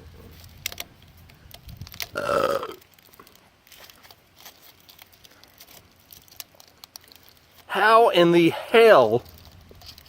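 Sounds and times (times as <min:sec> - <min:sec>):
faint clicks and rustles: 0:00.0 - 0:07.8, 0:08.8 - 0:10.0
low steady hum: 0:00.0 - 0:10.0
man burping: 0:02.2 - 0:02.8.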